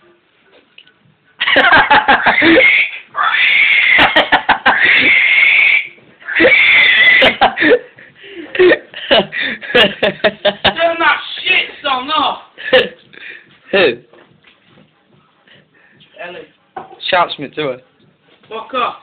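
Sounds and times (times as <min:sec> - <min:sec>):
high-pitched pig-like squealing: 0:02.2 - 0:07.4.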